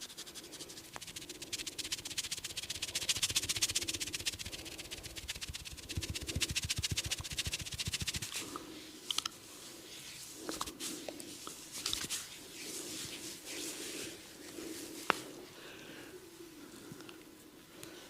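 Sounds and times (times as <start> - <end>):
rapid rhythmic tapping: 0.0 - 8.4
rubbing and squishing oily skin: 0.0 - 8.6, 9.9 - 15.3.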